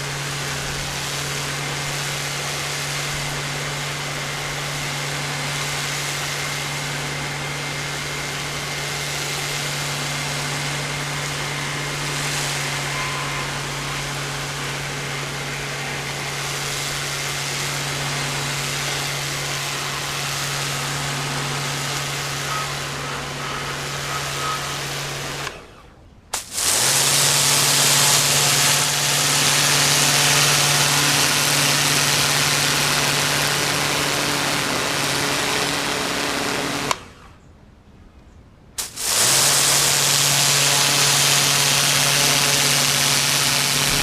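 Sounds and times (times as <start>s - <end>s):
pressure washer motor hum: 0.0s - 37.4s, 38.8s - 44.0s
water jet hissing: 38.8s - 44.0s.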